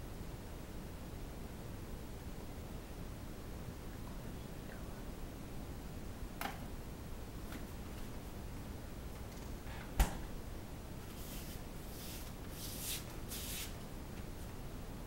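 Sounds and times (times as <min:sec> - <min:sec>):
low room noise: 0:00.0 - 0:15.0
soft hissing rustles: 0:11.0 - 0:14.7.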